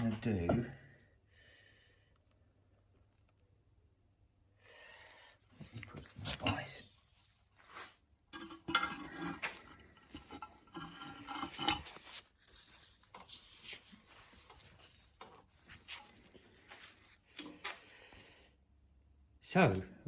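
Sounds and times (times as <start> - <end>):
metal parts scraping and clinking: 8.4 - 16.1.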